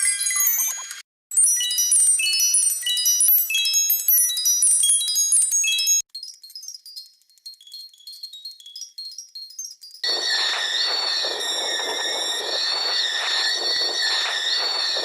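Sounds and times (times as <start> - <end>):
fast high electronic tones: 10.0 - 15.0.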